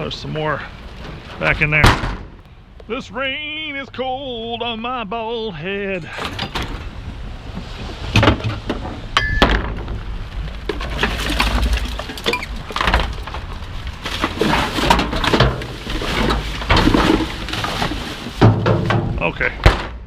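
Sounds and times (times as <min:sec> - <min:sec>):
trash rummaged in a dumpster: 0:05.9 - 0:20.0.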